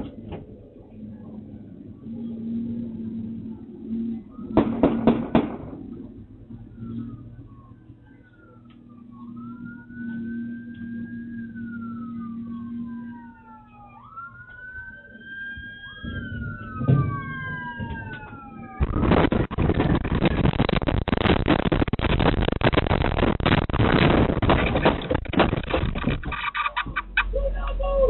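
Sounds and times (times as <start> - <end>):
low engine hum: 0.0 - 28.0
police sirens wailing: 0.0 - 28.0
loud rough rushing noise: 18.7 - 27.2.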